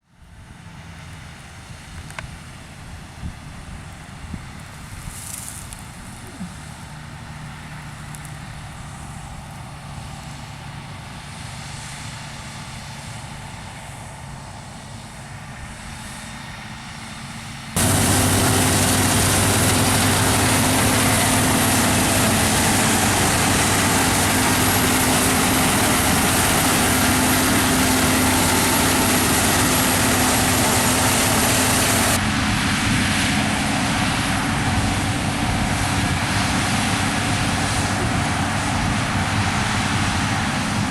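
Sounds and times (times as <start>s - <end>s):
combine harvester engine hum: 0.0s - 40.9s
threshing machinery rushing: 17.8s - 32.2s.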